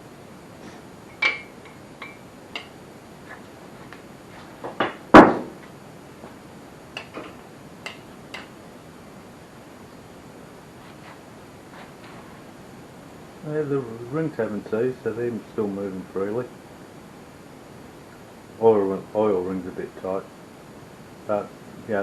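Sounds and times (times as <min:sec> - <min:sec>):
loud knock: 0:04.8 - 0:05.6.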